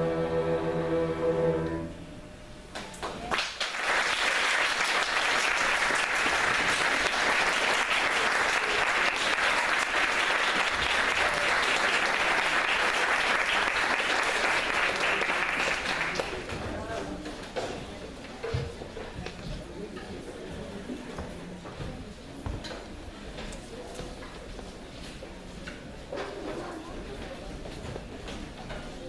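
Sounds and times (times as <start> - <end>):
string ensemble chord: 0.0 - 2.2
audience applause: 3.1 - 16.5.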